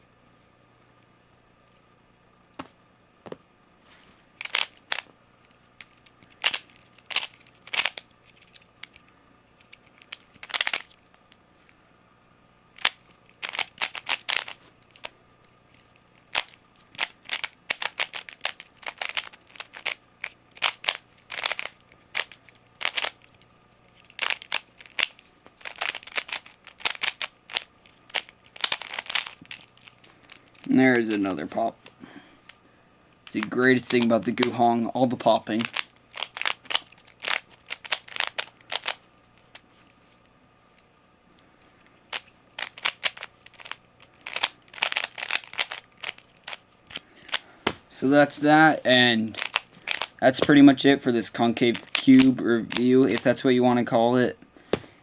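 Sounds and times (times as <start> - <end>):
puzzle cube plastic clicks: 4.4 - 5.1, 5.8 - 11.4, 12.8 - 15.1, 15.7 - 30.7, 33.2 - 39.6, 42.1 - 47.8, 49.3 - 50.6, 51.4 - 53.4.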